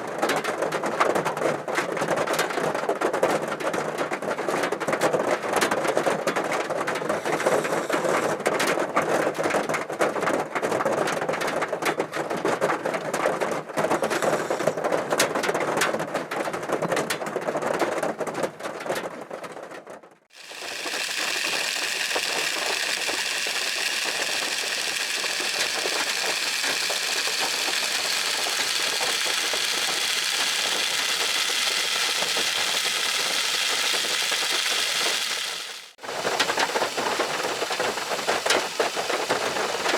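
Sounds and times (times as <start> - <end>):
rain hiss: 20.4 - 39.9.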